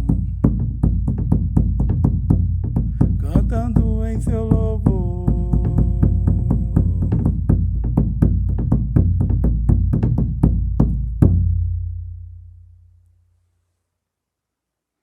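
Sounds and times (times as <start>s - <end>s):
percussion playing a steady beat: 0.0s - 11.5s
low drum rumble: 0.0s - 12.8s.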